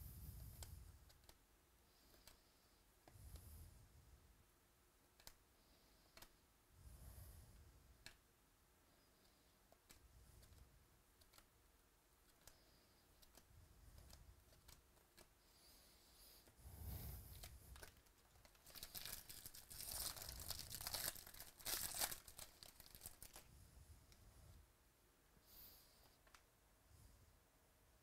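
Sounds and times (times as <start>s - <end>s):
foil wrapper tearing and crinkling: 18.5s - 23.4s.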